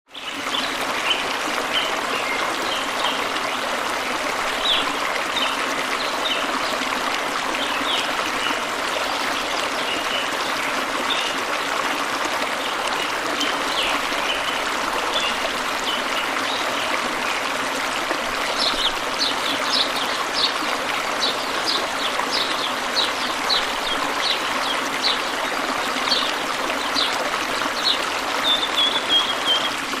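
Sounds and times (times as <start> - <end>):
river water flowing: 0.1 - 30.0
small birds chirping: 27.8 - 29.8.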